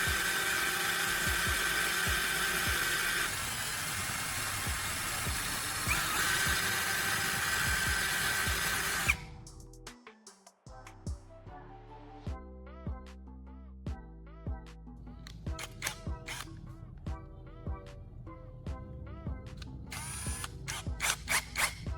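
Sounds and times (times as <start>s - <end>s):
electric drill motor whine: 0.0s - 9.3s, 15.6s - 16.5s, 19.9s - 21.9s.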